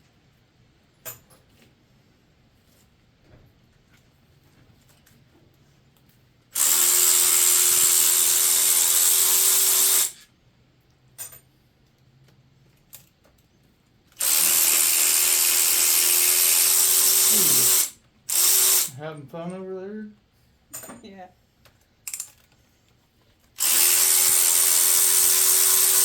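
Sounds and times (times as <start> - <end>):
power tool running: 6.6 - 10.2, 14.2 - 18.9, 23.6 - 26.0.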